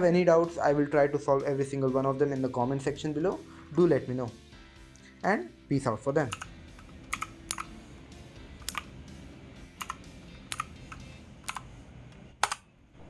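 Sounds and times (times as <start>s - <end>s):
mechanical keyboard key clicks: 7.1s - 7.7s, 12.4s - 12.6s.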